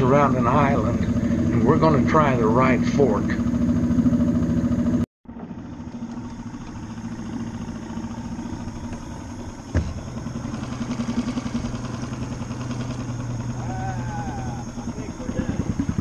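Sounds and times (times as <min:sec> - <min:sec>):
outboard motor running: 0:00.0 - 0:16.0
sharp knock: 0:09.7 - 0:10.1.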